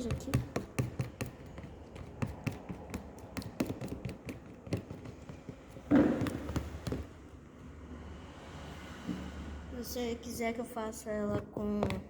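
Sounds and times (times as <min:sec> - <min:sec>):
utensil tapping against bowl: 0:00.0 - 0:07.0
slime being stirred: 0:00.0 - 0:07.3, 0:11.1 - 0:12.0.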